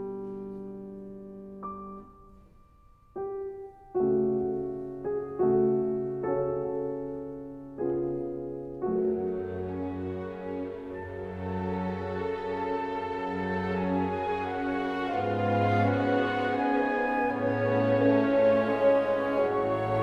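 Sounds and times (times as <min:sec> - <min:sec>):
gentle piano chords: 0:00.0 - 0:20.0.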